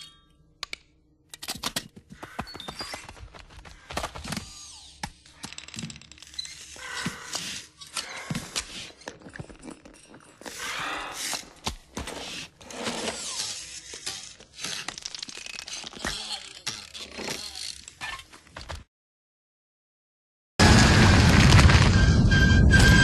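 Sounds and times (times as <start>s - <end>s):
noisy rushes with gliding squeaks: 2.4s - 11.5s, 21.8s - 23.0s.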